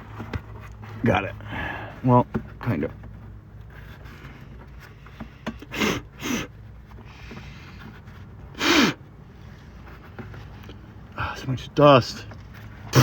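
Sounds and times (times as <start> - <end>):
man breathing forcefully: 1.4 - 2.0, 5.1 - 7.9, 8.5 - 9.0.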